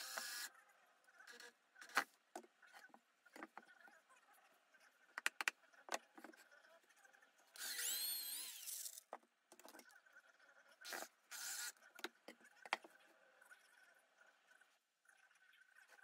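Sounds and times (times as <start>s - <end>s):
small power tool motor: 0.0s - 0.5s, 7.6s - 9.0s, 10.9s - 11.8s.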